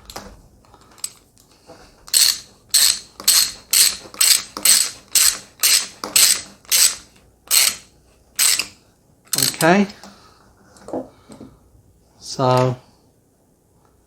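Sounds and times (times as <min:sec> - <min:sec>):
hose clamp ratcheting rasps: 0:02.1 - 0:07.8, 0:08.4 - 0:08.7, 0:09.3 - 0:09.7.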